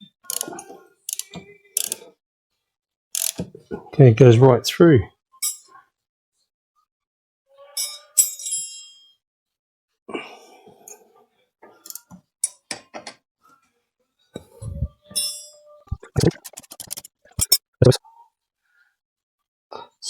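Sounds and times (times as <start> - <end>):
hand tools clinking on metal: 16.8 - 18.0.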